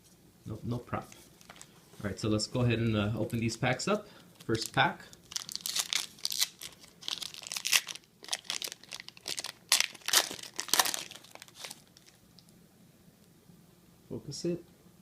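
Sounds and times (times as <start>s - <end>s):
wrapper tearing and crinkling: 4.4s - 12.2s.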